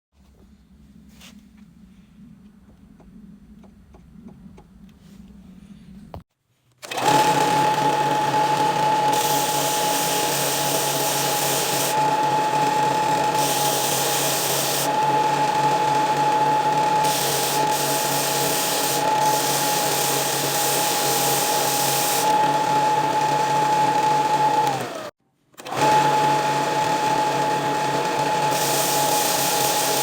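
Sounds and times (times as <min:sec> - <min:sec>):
low hum: 0:00.2 - 0:06.2
electric sander whining: 0:07.0 - 0:25.1, 0:25.7 - 0:30.0.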